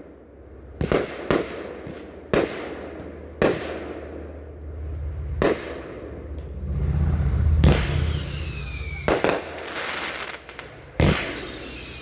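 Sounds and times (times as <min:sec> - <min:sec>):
low rumble: 0:03.9 - 0:11.2
firework shells bursting: 0:07.6 - 0:12.0.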